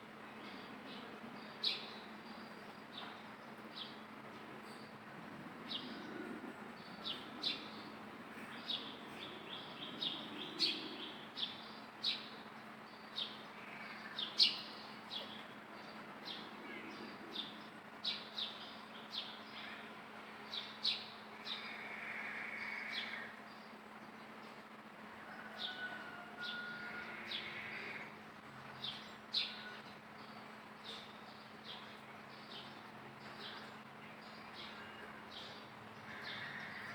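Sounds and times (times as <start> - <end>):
lower animal call: 21.4 - 23.4, 25.3 - 28.2, 36.0 - 36.9.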